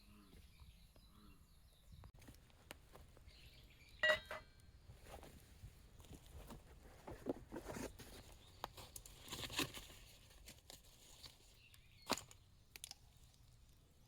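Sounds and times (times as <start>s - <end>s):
faint bird chirps: 3.3s - 4.9s
ringing clink: 4.0s - 4.6s.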